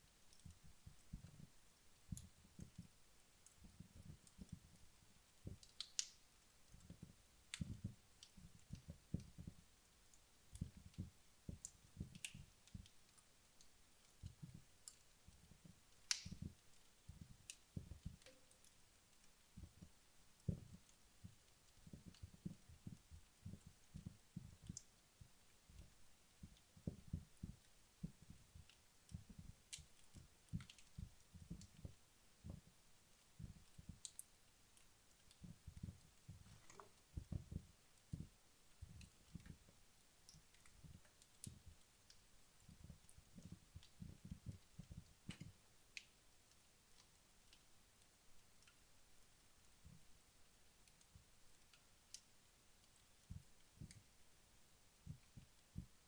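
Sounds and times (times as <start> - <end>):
wood fire crackling: 0.0 - 56.0
fire pops: 5.4 - 9.6, 14.3 - 24.9, 35.1 - 46.1.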